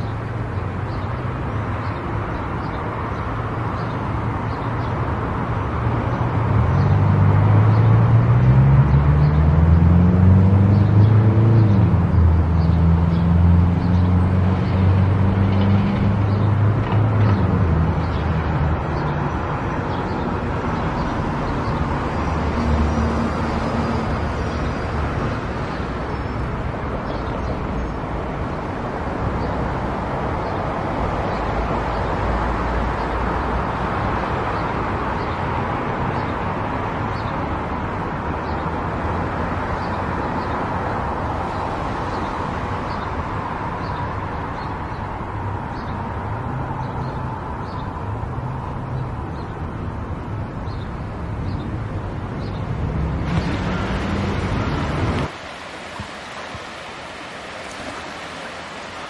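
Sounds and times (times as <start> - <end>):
tyre and road noise: 0.0 - 59.0
car engine accelerating: 6.8 - 17.4.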